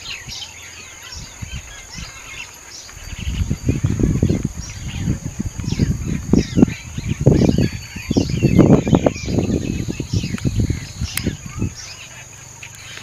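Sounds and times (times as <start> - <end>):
high insect buzz: 0.0 - 13.0
small birds chirping: 0.0 - 13.0
low rumbling and buffeting: 3.0 - 13.0.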